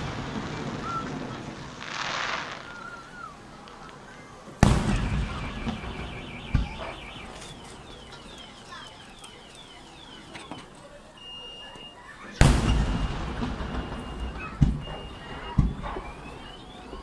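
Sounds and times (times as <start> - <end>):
fireworks booming: 0.0 - 8.7, 12.3 - 17.0.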